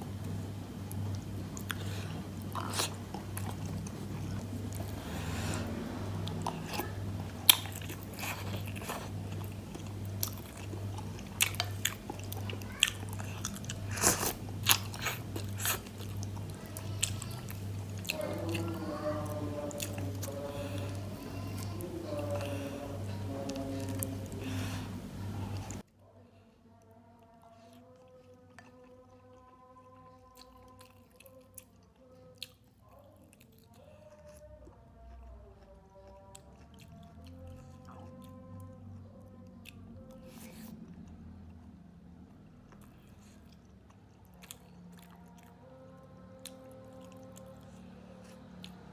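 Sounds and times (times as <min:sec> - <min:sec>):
chewing and biting: 0:00.0 - 0:25.8, 0:27.4 - 0:48.9
low hum: 0:00.0 - 0:25.8.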